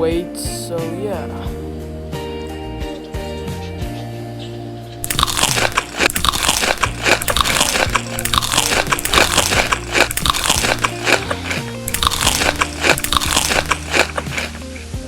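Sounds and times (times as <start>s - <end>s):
background music: 0.0s - 15.0s
crunchy food being chewed: 5.0s - 15.0s.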